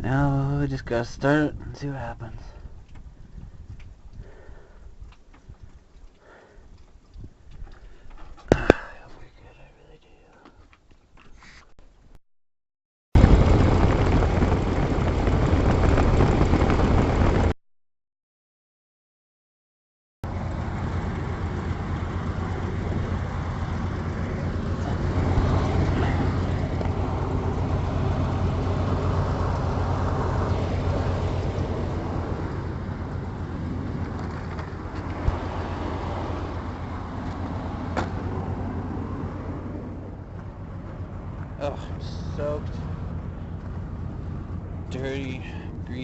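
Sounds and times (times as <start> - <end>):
engine running steadily: 13.2 - 17.5, 20.2 - 46.0.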